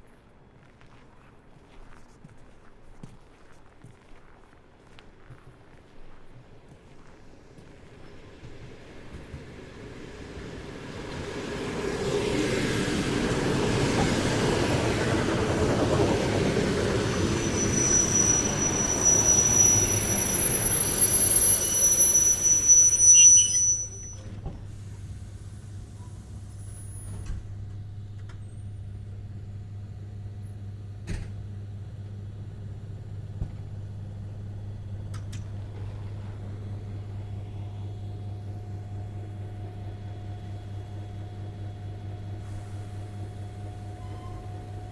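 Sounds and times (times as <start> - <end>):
train rumbling: 5.2 - 44.9
high-pitched brake squeal: 17.1 - 24.3, 44.0 - 44.7.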